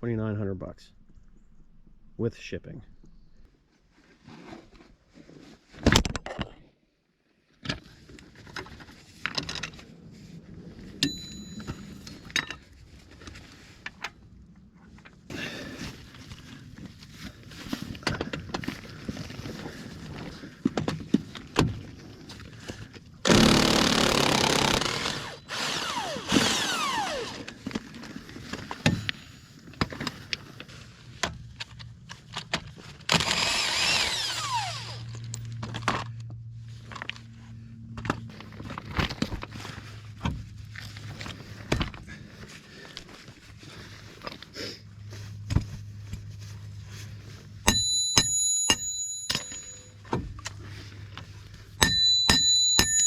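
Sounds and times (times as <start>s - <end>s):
metal and tools clanking: 11.0s - 12.8s, 47.7s - 50.6s
power tool winding down: 23.3s - 27.5s, 33.1s - 35.2s.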